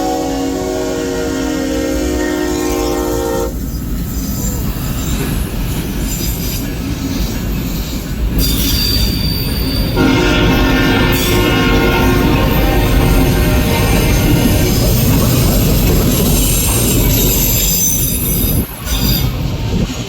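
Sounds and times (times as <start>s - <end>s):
locomotive horn chord: 0.0s - 3.6s, 10.0s - 14.8s
freight train rail rumble: 0.0s - 20.0s
wheel squeal: 3.7s - 10.1s, 12.4s - 19.5s.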